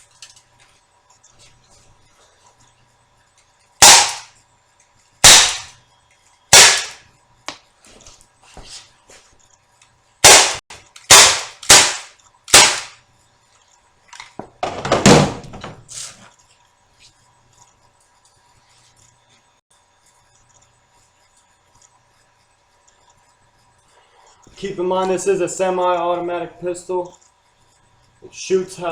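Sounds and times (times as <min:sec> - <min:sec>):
airsoft pistol shots: 0:03.8 - 0:04.3, 0:05.2 - 0:05.7, 0:06.5 - 0:07.0, 0:10.2 - 0:13.0.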